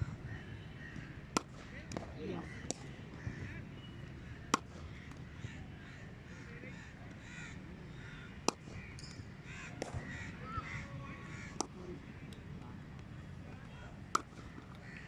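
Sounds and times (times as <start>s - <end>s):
cricket bat hitting ball: 1.3s - 2.9s, 4.5s - 5.2s, 8.4s - 10.1s, 14.1s - 14.8s
birds calling: 2.2s - 12.4s.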